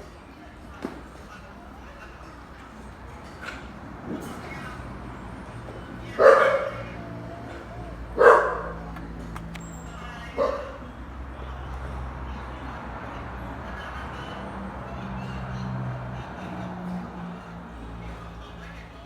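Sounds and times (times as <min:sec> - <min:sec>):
dog barking: 0:06.2 - 0:07.0, 0:08.2 - 0:09.0, 0:10.3 - 0:10.8.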